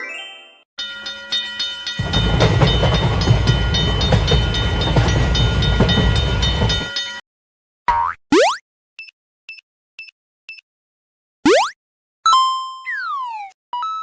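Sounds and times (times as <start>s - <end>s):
railroad crossing bell ringing: 0.8s - 7.2s
train rumbling past: 1.9s - 7.2s.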